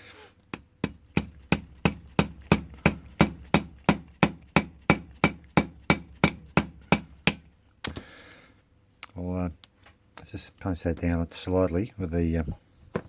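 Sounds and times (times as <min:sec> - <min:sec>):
small hammer tapping on metal: 0:00.5 - 0:08.0.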